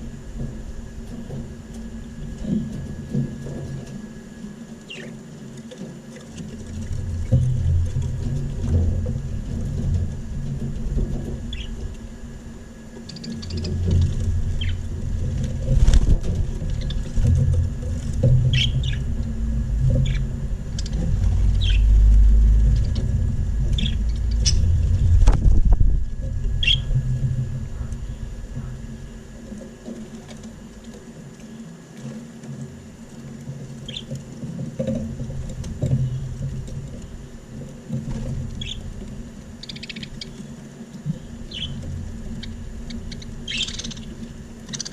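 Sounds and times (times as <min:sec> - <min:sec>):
budgerigars chirping: 0:11.5 - 0:11.8, 0:13.1 - 0:13.7, 0:18.5 - 0:19.1, 0:20.0 - 0:22.0, 0:23.7 - 0:24.8, 0:26.6 - 0:26.9, 0:38.6 - 0:38.8, 0:39.6 - 0:40.4, 0:41.5 - 0:41.8, 0:42.4 - 0:44.9
low rumble: 0:13.5 - 0:29.6.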